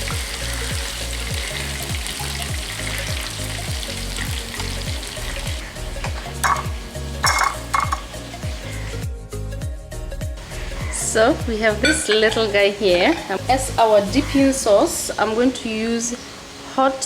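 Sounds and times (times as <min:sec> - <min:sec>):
chicken deep-frying in oil: 0:00.0 - 0:09.0
music with bass line: 0:00.0 - 0:14.6.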